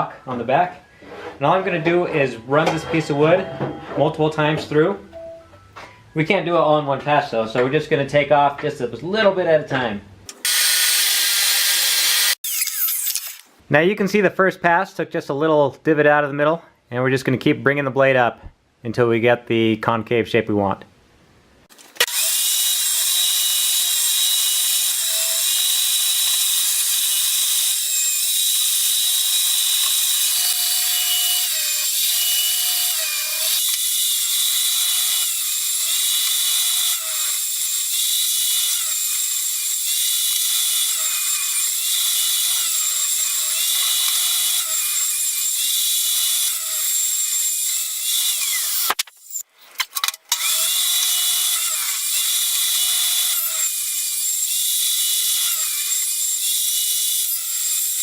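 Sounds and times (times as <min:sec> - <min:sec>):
table saw cutting wood: 0:10.4 - 0:13.5, 0:22.0 - 0:49.4, 0:50.3 - 0:58.0.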